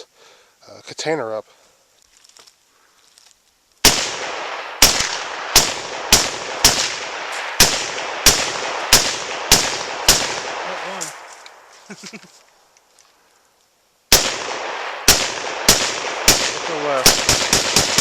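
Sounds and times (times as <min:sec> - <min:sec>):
echoing gunshots: 0:03.8 - 0:11.7, 0:14.1 - 0:18.0.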